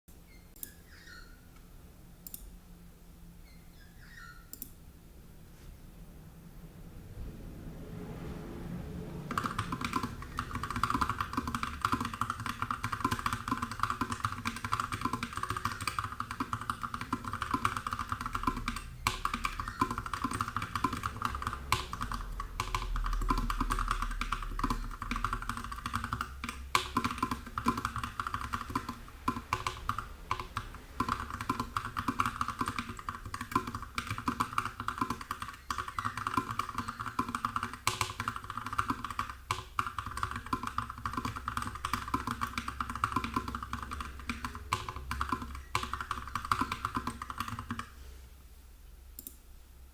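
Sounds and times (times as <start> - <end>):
mechanical keyboard typing: 9.3 - 48.0.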